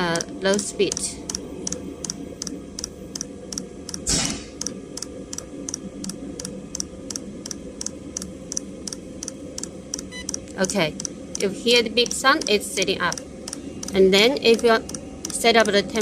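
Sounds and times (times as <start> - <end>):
heater humming: 0.0 - 16.0
fuel pump ticking: 7.5 - 16.0.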